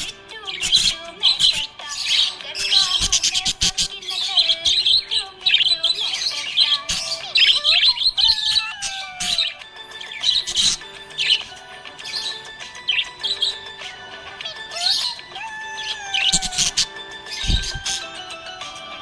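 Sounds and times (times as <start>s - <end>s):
background music with held notes: 0.0s - 19.0s
budgerigars chirping and twittering: 0.0s - 19.0s.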